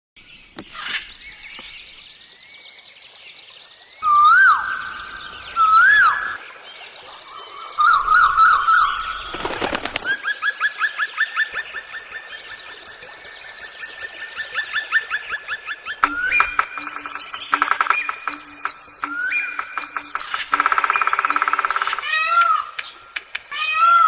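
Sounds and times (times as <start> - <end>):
whistled bird notes: 3.9 - 6.4, 14.8 - 23.0
bird warbling trill: 14.8 - 23.0
repeated bird chirps: 15.9 - 23.2
bird rattling call: 19.8 - 22.9.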